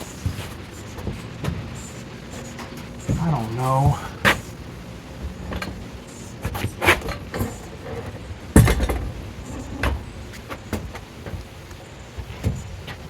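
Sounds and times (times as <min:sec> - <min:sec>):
metal clanks and knocks: 0:06.5 - 0:11.4.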